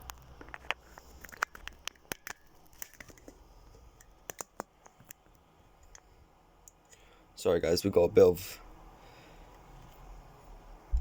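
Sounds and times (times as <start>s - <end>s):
objects clicking and tapping: 0.0s - 3.4s.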